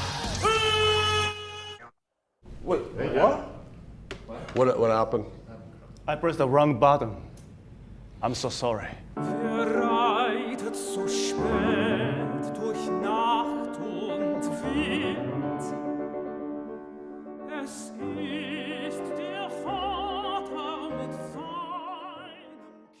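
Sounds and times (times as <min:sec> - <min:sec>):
classical accompaniment: 0:09.2 - 0:23.0
operatic singing with vibrato: 0:09.2 - 0:23.0.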